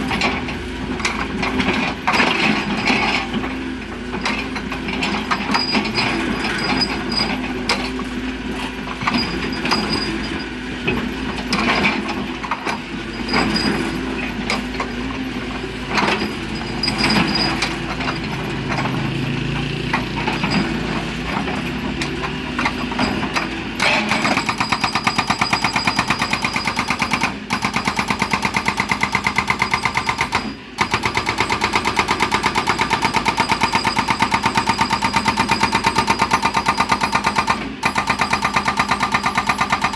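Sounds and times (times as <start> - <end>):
excavator engine running: 0.0 - 39.9
hydraulic hammer pounding stone: 9.0 - 15.0, 15.9 - 39.9.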